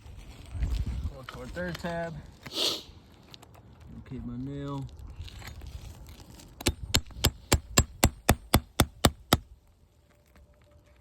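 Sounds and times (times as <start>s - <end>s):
hammer tapping lightly: 6.7s - 9.4s.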